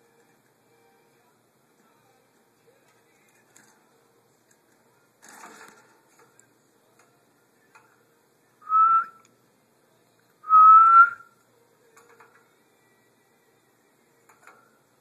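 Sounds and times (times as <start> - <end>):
whistled notes: 8.6 - 9.2, 10.4 - 11.3.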